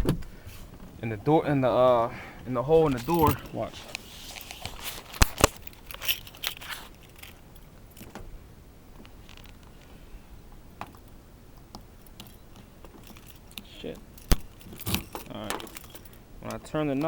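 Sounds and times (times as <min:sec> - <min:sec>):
car keys jangling: 0:02.7 - 0:08.2, 0:10.8 - 0:17.0
key clicking in door lock: 0:10.9 - 0:17.0.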